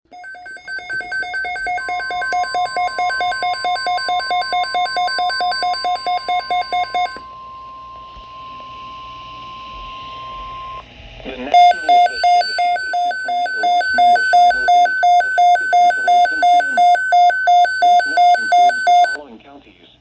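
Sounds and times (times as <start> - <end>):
rapid alert beeps: 0.2 - 7.2, 11.6 - 19.2
steady warning tone: 11.6 - 19.2.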